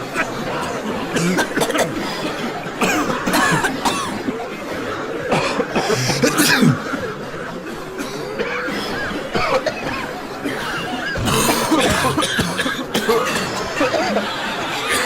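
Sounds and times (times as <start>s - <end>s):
people coughing: 2.8s - 4.2s, 11.2s - 15.0s
voices: 11.2s - 13.9s.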